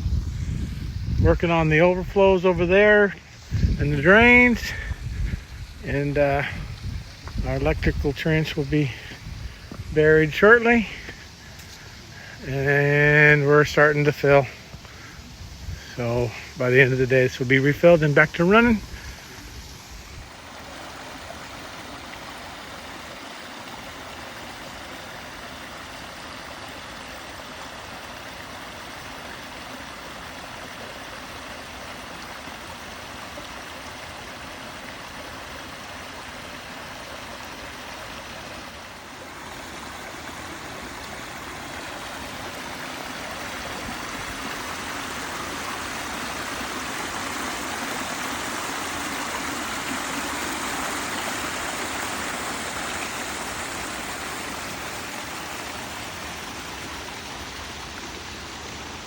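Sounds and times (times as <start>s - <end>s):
water flowing into a pond: 0.0s - 59.0s.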